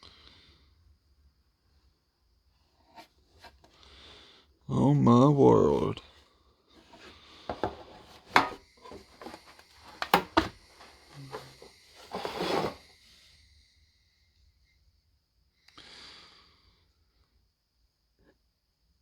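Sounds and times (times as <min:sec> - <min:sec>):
cloth rubbing: 0:08.1 - 0:12.8.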